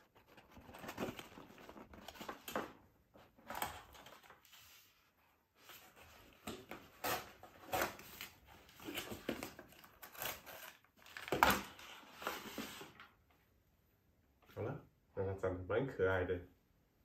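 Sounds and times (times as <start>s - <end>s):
packaging rustling and scraping: 0.0s - 5.0s, 5.6s - 13.1s.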